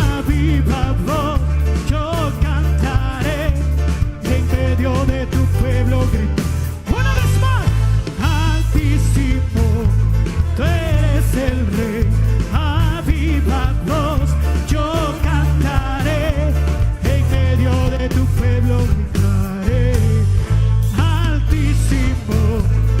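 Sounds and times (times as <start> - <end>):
gospel band playing: 0.0 - 23.0
person singing with vibrato: 0.0 - 23.0.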